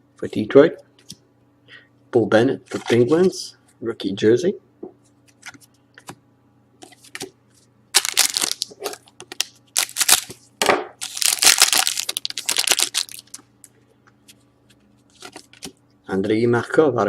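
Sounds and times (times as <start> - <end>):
foil wrapper crinkling and tearing: 8.0 - 10.4, 11.0 - 13.4.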